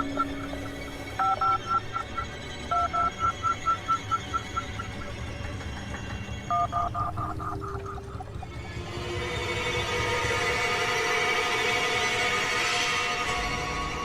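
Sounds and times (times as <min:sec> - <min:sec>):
phone keypad beeps: 0:00.0 - 0:05.2, 0:06.5 - 0:08.5.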